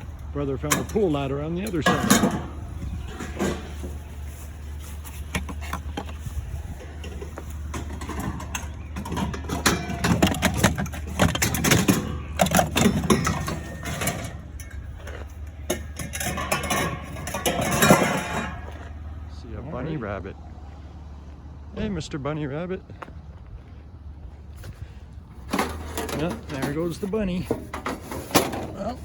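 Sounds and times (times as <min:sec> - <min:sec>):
scrap metal clanking: 0:00.0 - 0:19.2, 0:25.4 - 0:29.0
engine idling: 0:00.0 - 0:29.0.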